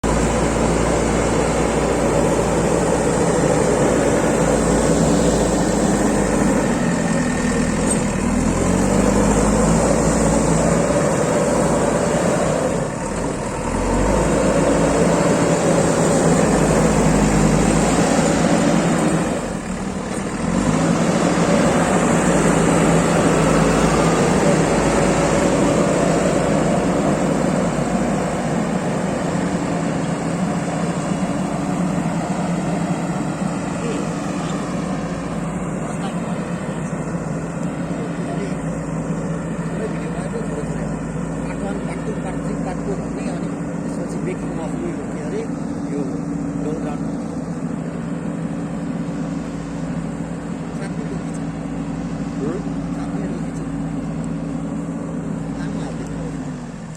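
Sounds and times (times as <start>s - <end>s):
diesel engine of digger: 0.0s - 56.9s.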